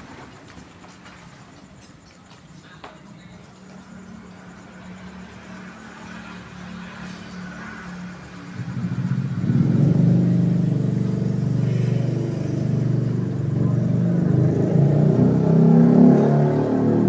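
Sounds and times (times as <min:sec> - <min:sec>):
vehicle engine rumbling: 0:03.8 - 0:17.0.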